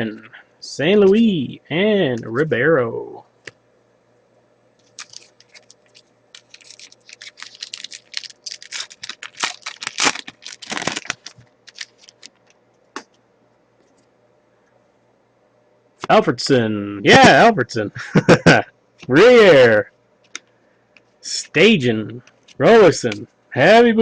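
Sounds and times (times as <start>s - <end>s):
card wrapper crinkling: 4.8s - 12.6s.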